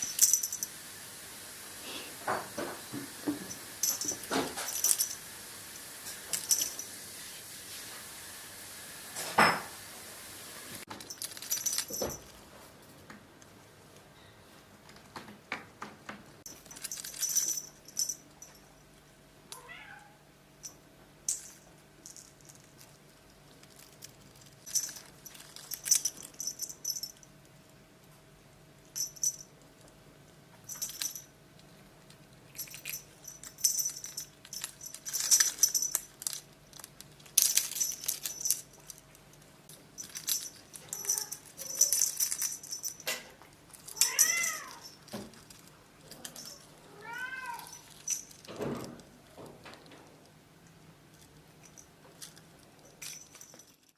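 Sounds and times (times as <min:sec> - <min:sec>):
faint steady hum: 0:00.0 - 0:53.9
cat meowing: 0:19.6 - 0:20.2, 0:43.9 - 0:44.8, 0:46.9 - 0:47.8.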